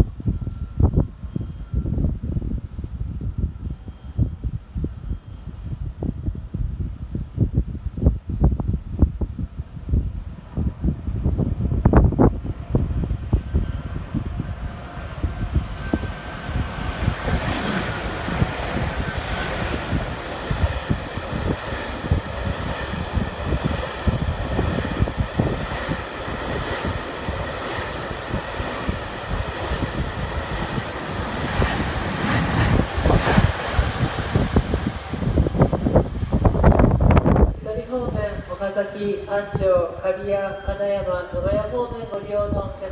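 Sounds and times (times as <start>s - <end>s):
freight train rumbling: 0.0s - 40.0s.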